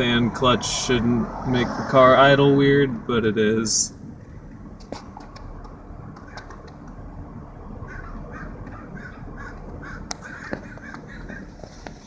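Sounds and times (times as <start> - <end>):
car engine idling: 0.0 - 12.0
sharp clicks: 4.8 - 7.0
crow cawing: 7.8 - 11.6.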